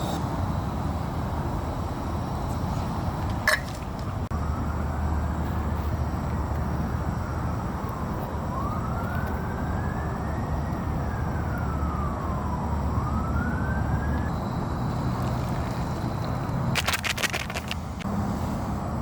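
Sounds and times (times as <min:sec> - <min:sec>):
siren wailing: 0:04.3 - 0:15.2.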